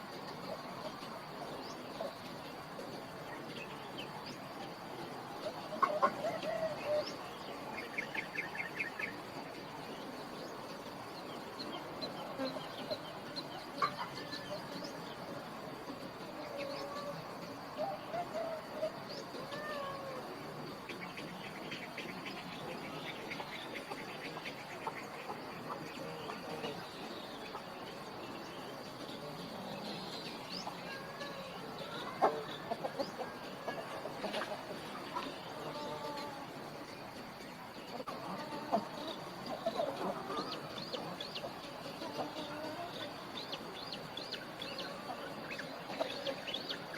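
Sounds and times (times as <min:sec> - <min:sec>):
birds chirping: 0:00.0 - 0:46.9
rural outdoor background: 0:00.0 - 0:46.9
wavering animal calls: 0:16.4 - 0:20.8.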